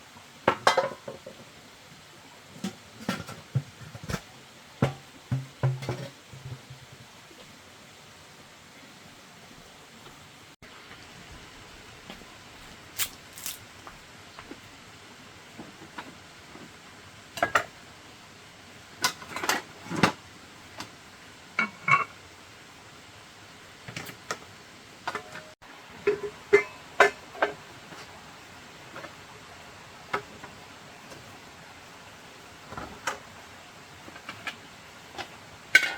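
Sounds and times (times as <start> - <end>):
household objects knocking and clinking: 4.8 - 6.8.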